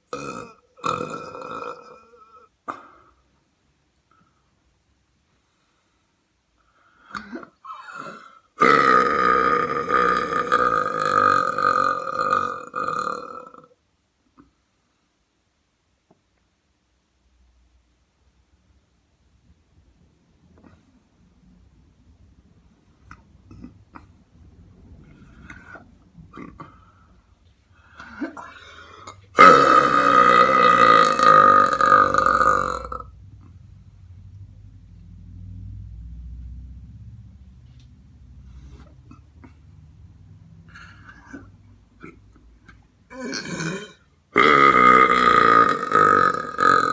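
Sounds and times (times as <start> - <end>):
person belching: 0.1 - 3.0, 7.1 - 13.8, 25.4 - 26.9, 27.9 - 33.1, 43.1 - 46.9.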